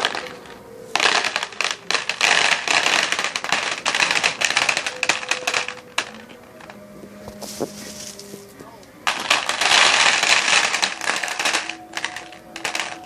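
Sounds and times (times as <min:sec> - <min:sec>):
rapid sharp bangs and crackles: 0:01.0 - 0:06.2, 0:09.1 - 0:13.0.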